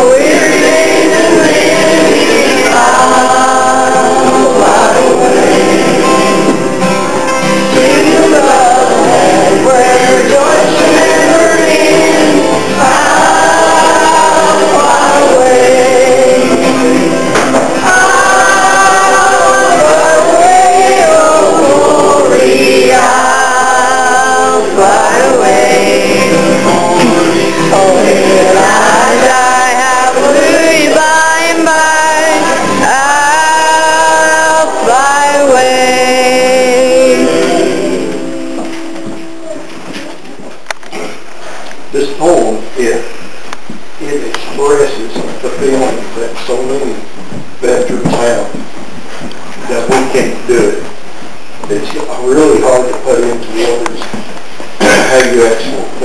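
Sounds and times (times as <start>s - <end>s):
men singing gospel song: 0.0s - 39.0s
instrumental accompaniment: 0.0s - 40.5s.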